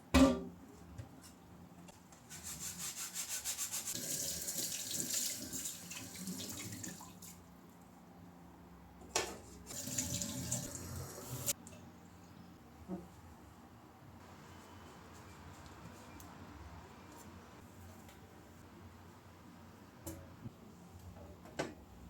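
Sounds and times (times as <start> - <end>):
tap water running into sink: 4.0 - 7.1, 9.7 - 11.5.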